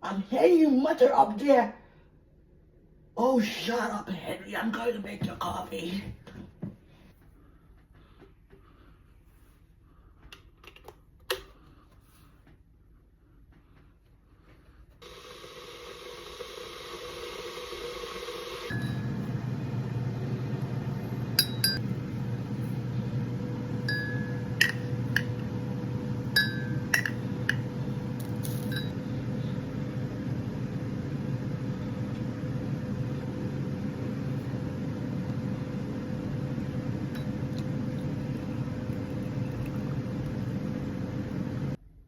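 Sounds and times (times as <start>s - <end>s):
kitchen appliance humming: 15.0s - 41.8s
crockery clinking: 21.4s - 21.8s.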